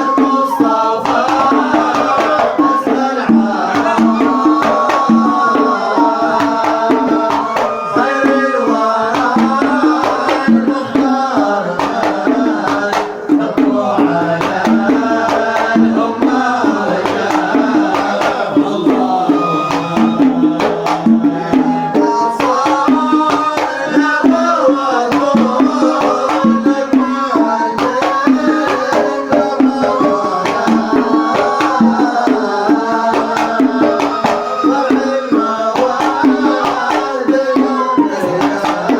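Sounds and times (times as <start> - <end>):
quick hand-drum strokes: 0.0 - 38.9
melodic instrumental line: 13.1 - 23.3.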